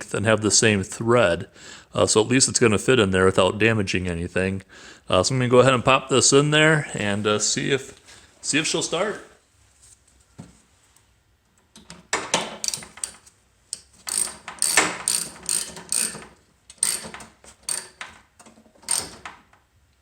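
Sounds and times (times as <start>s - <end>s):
ratchet wrench clicking: 12.6s - 18.2s, 18.8s - 19.2s.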